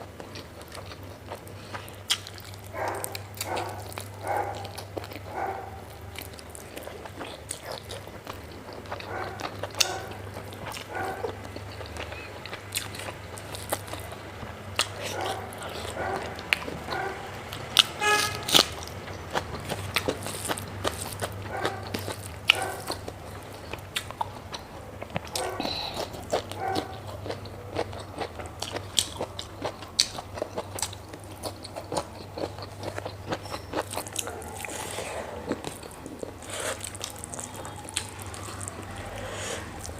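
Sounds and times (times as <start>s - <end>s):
close-miked chewing: 0.0s - 39.9s
short pitched squeak: 17.9s - 18.5s.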